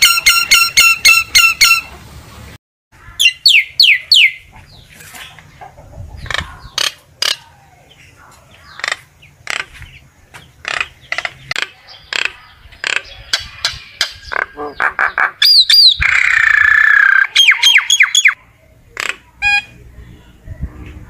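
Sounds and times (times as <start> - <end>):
myna calls and whistles: 12.9 - 18.4.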